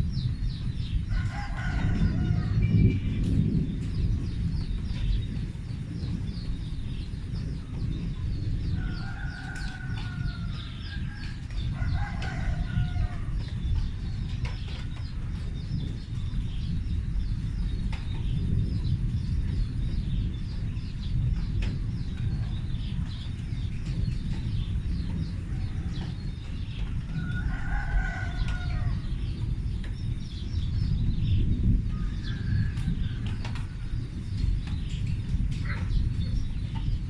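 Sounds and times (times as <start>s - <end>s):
continuous low rumble: 0.0s - 37.0s
rooster crowing: 1.1s - 2.8s, 8.8s - 13.3s, 27.1s - 29.0s.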